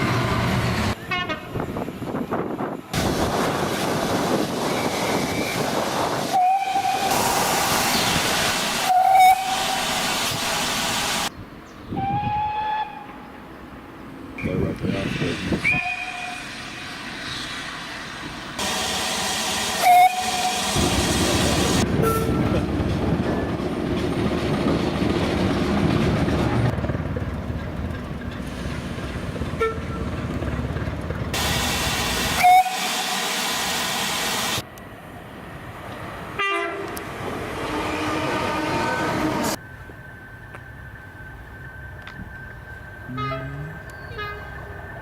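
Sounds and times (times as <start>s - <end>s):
trains running on rails: 0.0s - 45.0s
train horn toots: 1.0s - 1.6s, 6.3s - 7.3s, 8.9s - 9.9s, 19.8s - 20.8s, 22.0s - 22.6s, 29.6s - 30.0s, 32.4s - 32.9s, 36.4s - 37.0s, 37.6s - 39.6s, 43.1s - 44.6s.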